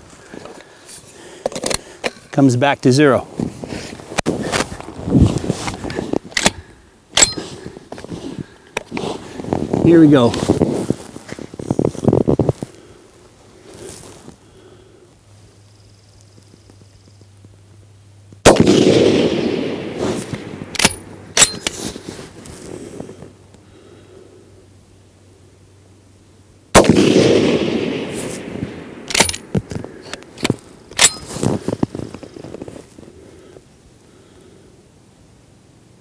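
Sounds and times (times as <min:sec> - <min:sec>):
rifle shots with rolling echo: 0:18.4 - 0:21.9, 0:26.7 - 0:31.5
sharp cracks and clicks: 0:20.2 - 0:21.8, 0:29.1 - 0:31.3.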